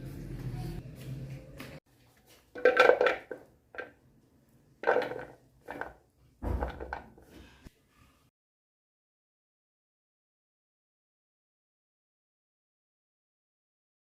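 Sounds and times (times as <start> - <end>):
utensils and dishes clattering: 2.6 - 3.9.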